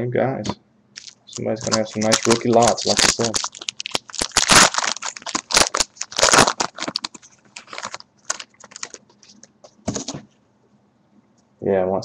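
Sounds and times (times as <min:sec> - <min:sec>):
foil wrappers crinkling: 0:01.0 - 0:09.5
cards rustling and clicking: 0:01.0 - 0:10.2.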